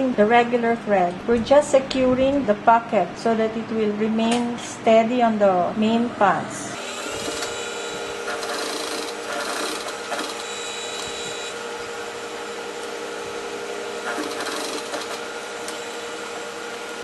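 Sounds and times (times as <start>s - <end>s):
sewing machine running: 6.8s - 11.7s, 13.8s - 16.0s.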